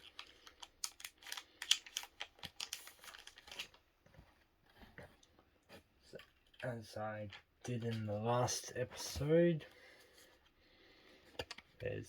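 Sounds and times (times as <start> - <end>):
foil wrapper snipped and crinkling: 0.0 - 3.8.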